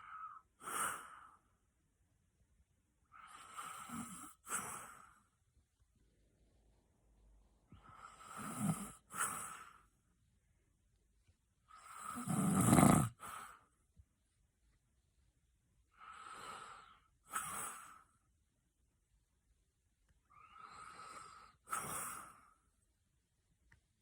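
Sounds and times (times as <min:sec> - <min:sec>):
person snoring loudly: 0:11.9 - 0:13.3.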